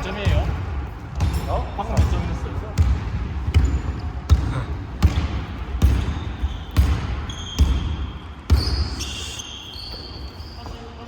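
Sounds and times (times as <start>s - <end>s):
basketball bouncing on court: 0.0s - 9.1s
short high squeak: 8.6s - 10.9s.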